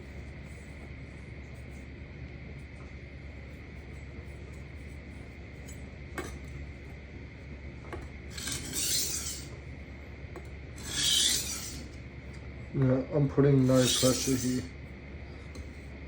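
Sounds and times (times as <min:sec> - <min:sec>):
knife scraping on sharpening plate: 0:08.3 - 0:09.5, 0:10.8 - 0:12.0, 0:13.6 - 0:14.7.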